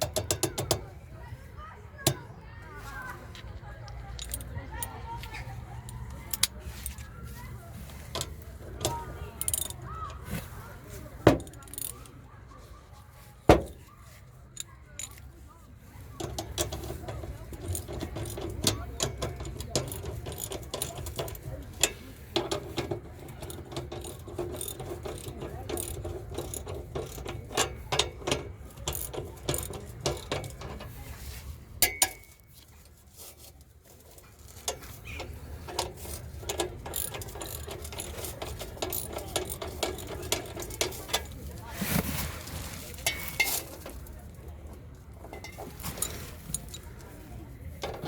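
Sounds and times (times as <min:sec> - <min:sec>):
mechanical clicking and clattering: 0:11.2 - 0:12.1, 0:16.2 - 0:31.0, 0:34.4 - 0:41.5.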